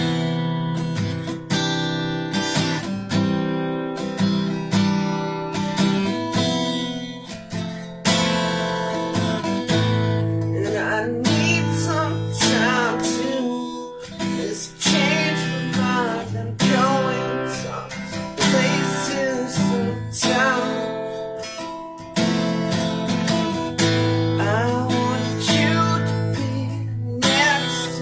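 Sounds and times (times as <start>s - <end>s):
acoustic guitar strumming chords: 0.0s - 28.0s
guitar melodic line: 0.0s - 28.0s.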